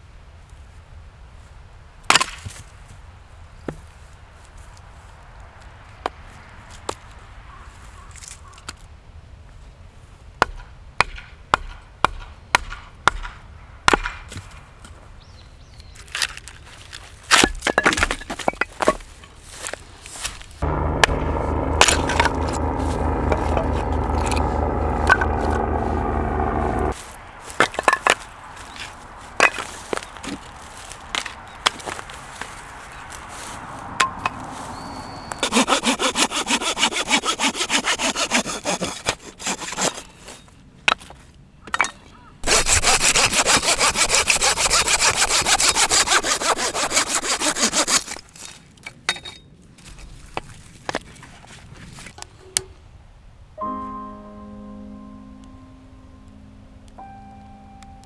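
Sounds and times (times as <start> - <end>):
steady mechanical hum: 20.6 - 27.0.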